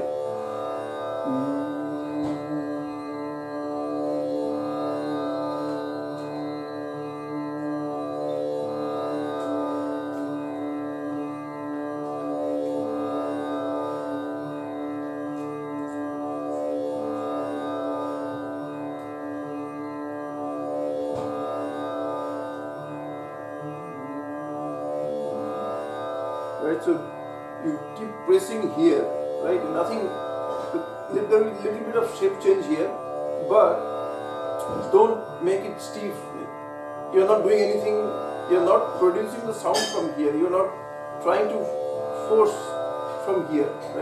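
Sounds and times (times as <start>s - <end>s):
sustained drone note: 0.0s - 36.4s, 37.1s - 44.0s.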